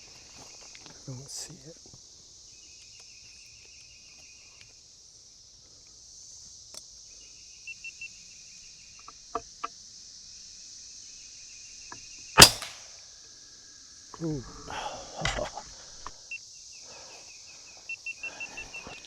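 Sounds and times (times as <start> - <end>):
insects droning: 0.0 - 19.0
faint pulsed chirping: 6.0 - 14.4, 15.8 - 19.0
air rifle shot: 12.4 - 12.8.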